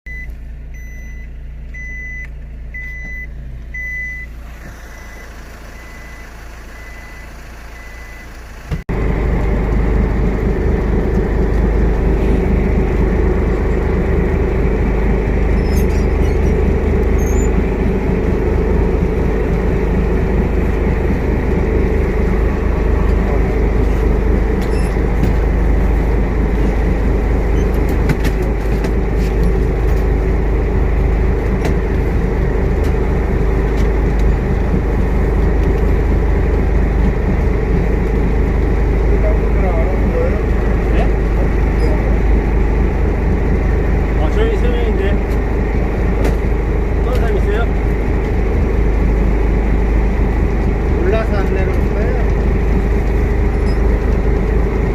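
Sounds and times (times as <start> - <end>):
high electronic beep: 0.1 - 8.3, 17.1 - 17.6, 22.3 - 25.1
engine rumble: 0.1 - 54.9
rushing noise: 8.9 - 40.9.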